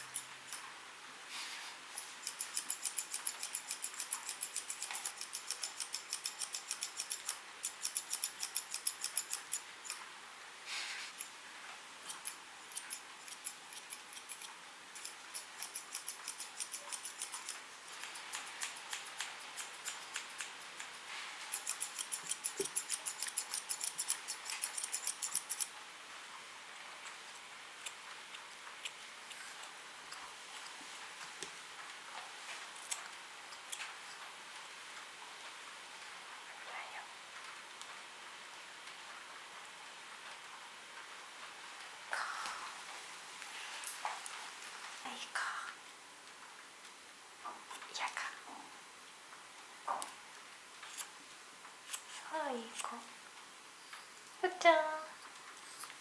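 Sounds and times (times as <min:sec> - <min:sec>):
grooming scissors snipping fur: 0:00.0 - 0:00.6, 0:02.0 - 0:10.0, 0:11.1 - 0:11.3, 0:12.1 - 0:25.7, 0:32.8 - 0:33.9, 0:50.9 - 0:51.1, 0:51.9 - 0:53.0.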